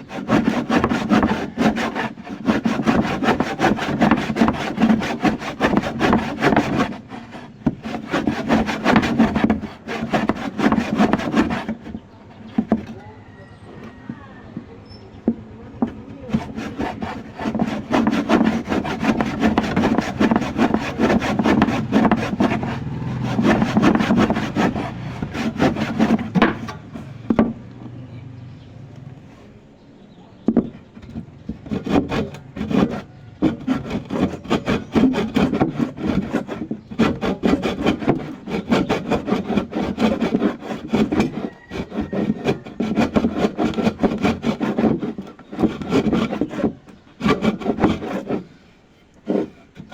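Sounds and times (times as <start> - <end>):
hand saw rasping strokes: 0.0 - 14.6, 15.7 - 27.5, 30.6 - 49.9.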